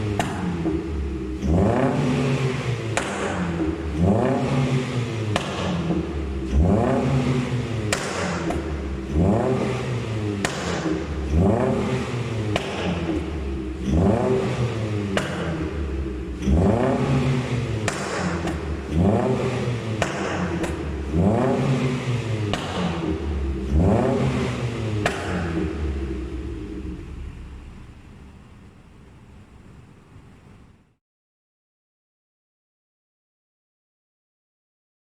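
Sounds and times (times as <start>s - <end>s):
car engine revving: 0.0s - 30.9s
exhaust pops and crackles: 26.8s - 30.7s.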